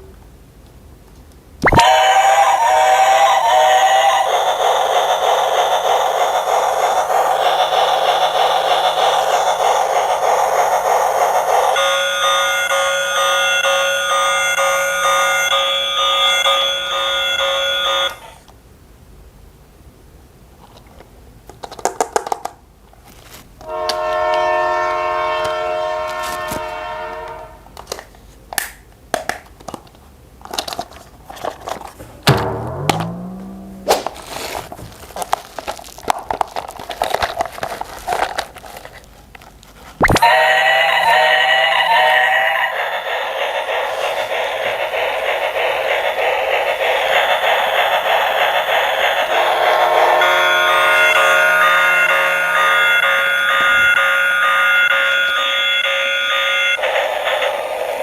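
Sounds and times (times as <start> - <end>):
toy train electronic horn: 11.8 - 18.3, 23.6 - 27.6, 40.2 - 42.5, 49.9 - 56.9.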